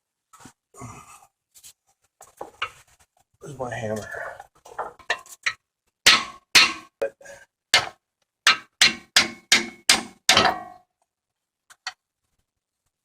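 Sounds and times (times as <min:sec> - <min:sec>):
hammer striking metal: 0:06.1 - 0:06.9, 0:07.8 - 0:10.8.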